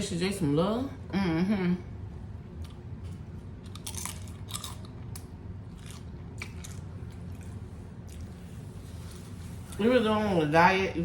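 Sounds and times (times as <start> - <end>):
crunchy chips chewing: 2.6 - 8.4.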